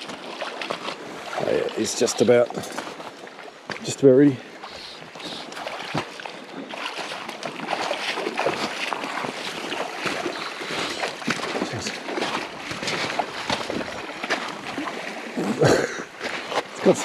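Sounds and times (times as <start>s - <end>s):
river water rushing: 0.0s - 17.0s
fish splashing: 4.6s - 15.6s.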